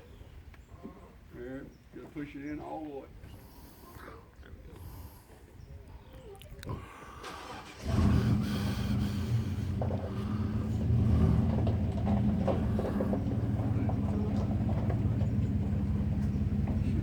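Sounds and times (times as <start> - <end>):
vehicle engine starting and running: 7.1 - 17.0.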